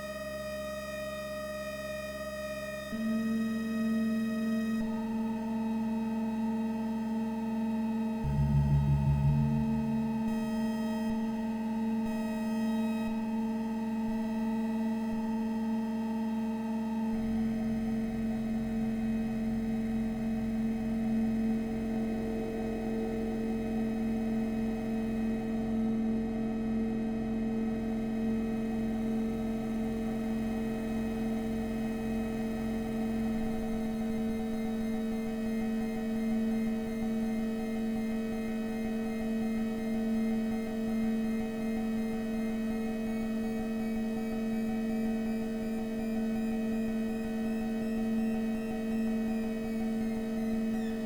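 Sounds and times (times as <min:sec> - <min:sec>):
low pulsing throb: 0:08.2 - 0:11.4
synthesizer drone: 0:08.3 - 0:10.7.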